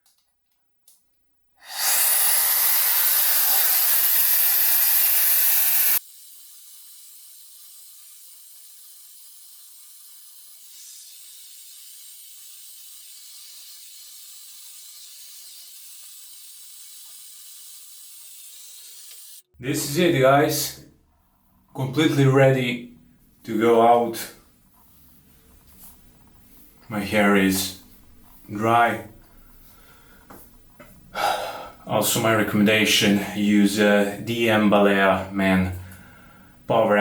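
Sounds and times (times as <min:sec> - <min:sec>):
hair dryer blowing: 0:01.6 - 0:06.0
quiet steady hiss: 0:19.6 - 0:37.0.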